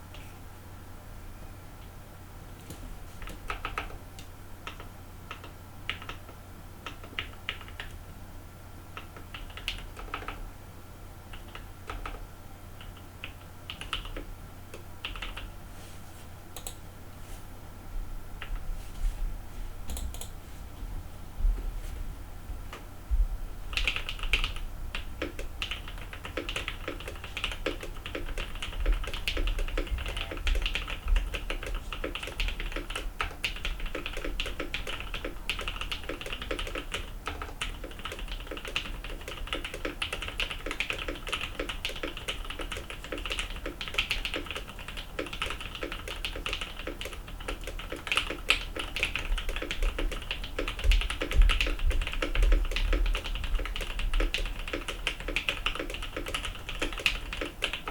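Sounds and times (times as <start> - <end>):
fast mechanical keyboard typing: 3.2 - 4.0, 4.6 - 8.0, 9.0 - 10.4, 11.3 - 12.2, 12.8 - 15.5, 23.7 - 57.9.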